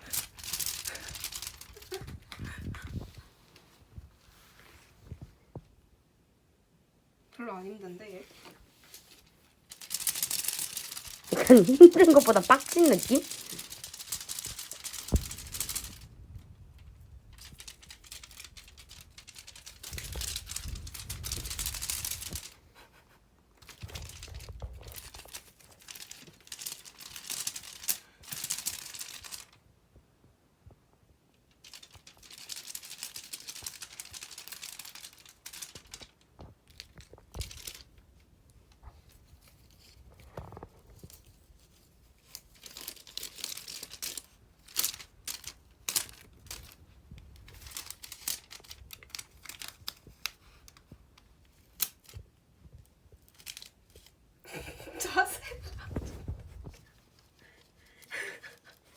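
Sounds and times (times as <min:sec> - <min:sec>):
paper or plastic crinkling: 0:00.0 - 0:03.2, 0:08.3 - 0:16.1, 0:17.4 - 0:22.6, 0:23.6 - 0:29.6, 0:31.6 - 0:38.0, 0:38.8 - 0:52.2, 0:53.2 - 0:54.2, 0:55.0 - 0:58.9.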